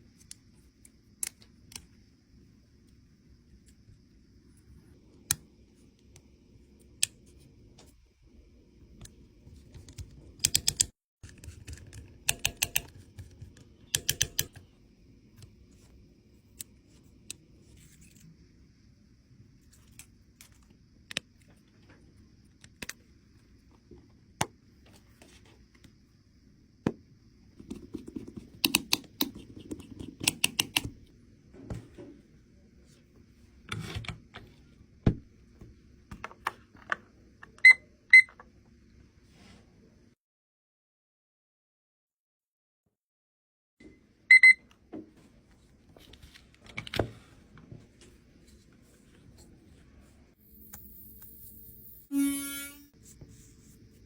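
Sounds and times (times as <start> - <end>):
faint steady hum: 0.0 - 40.2.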